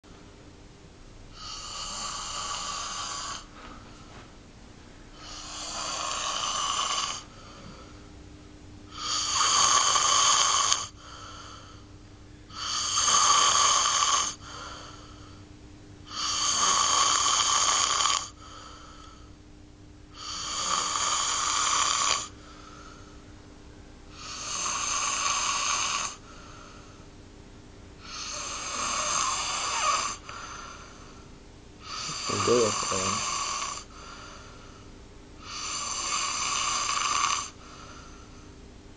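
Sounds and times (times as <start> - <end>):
man snoring heavily: 1.3 - 3.5, 5.1 - 7.9, 8.9 - 11.8, 12.5 - 15.4, 16.0 - 19.3, 20.1 - 23.1, 24.1 - 27.0, 28.0 - 31.2, 31.8 - 34.8, 35.4 - 38.4
short breath: 11.0 - 11.9.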